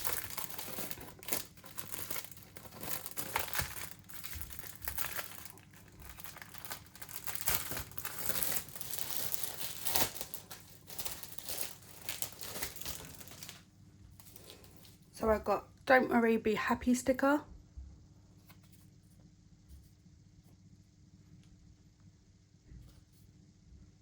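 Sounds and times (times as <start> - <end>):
packaging tearing: 0.0 - 13.6
packaging crinkling and rustling: 0.0 - 15.0.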